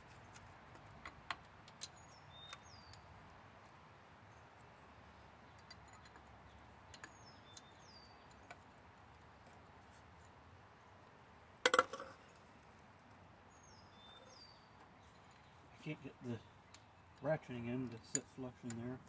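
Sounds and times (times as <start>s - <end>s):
bird chirps: 1.9s - 3.1s, 5.5s - 8.6s, 13.5s - 18.9s.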